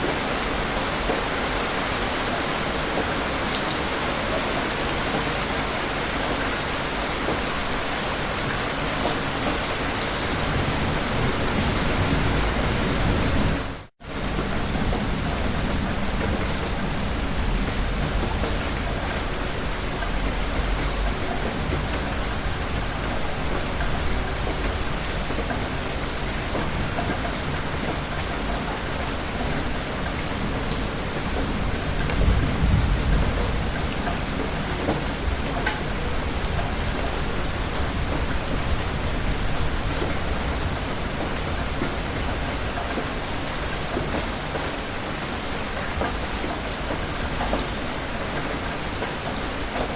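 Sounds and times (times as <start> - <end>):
heavy rain falling: 0.0 - 49.9
thunder rumbling: 8.6 - 44.1.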